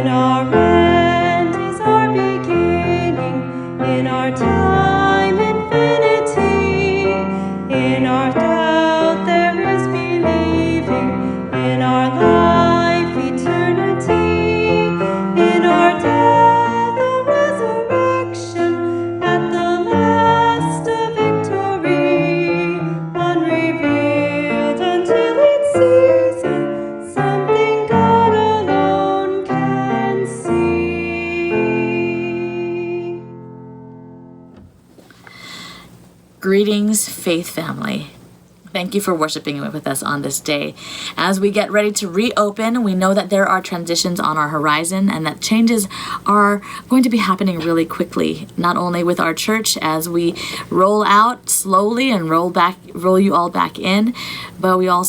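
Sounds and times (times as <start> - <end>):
person singing: 0.0 - 33.3
piano music: 0.0 - 34.9.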